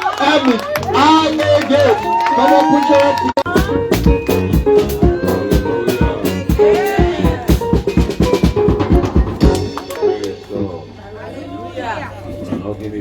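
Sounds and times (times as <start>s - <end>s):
upbeat music with drum kit: 0.7s - 10.6s.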